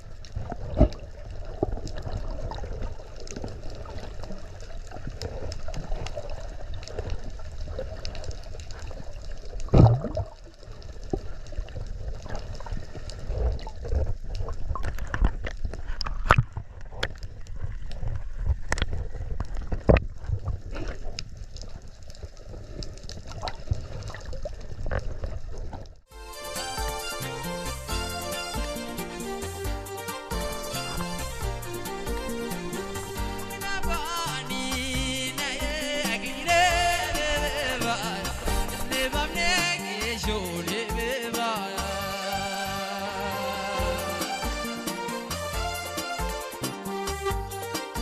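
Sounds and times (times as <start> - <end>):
sea water sloshing and gurgling: 0.0 - 26.1.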